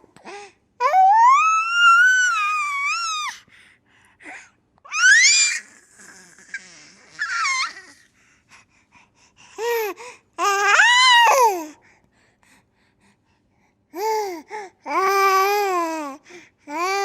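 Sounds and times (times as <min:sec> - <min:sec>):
baby squealing: 0:04.9 - 0:08.0.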